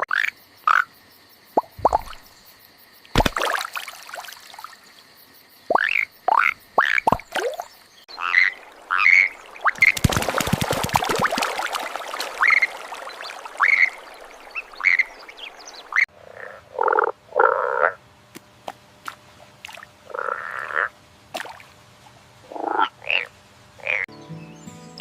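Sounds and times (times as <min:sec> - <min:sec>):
frog croaking: 0:00.0 - 0:02.5, 0:05.6 - 0:10.0, 0:12.4 - 0:18.0, 0:20.0 - 0:21.0, 0:22.4 - 0:24.1
music: 0:24.1 - 0:25.0.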